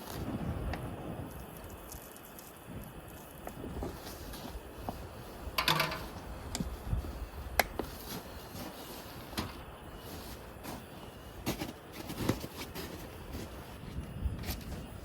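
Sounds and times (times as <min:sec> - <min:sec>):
objects clattering: 0:05.6 - 0:06.2
objects clicking and knocking: 0:05.6 - 0:06.2.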